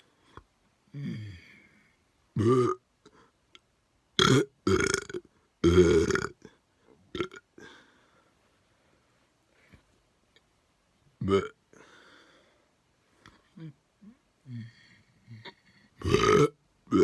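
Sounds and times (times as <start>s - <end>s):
person burping: 2.4s - 2.8s, 4.2s - 6.5s, 7.2s - 7.5s, 11.2s - 11.6s, 14.5s - 17.0s.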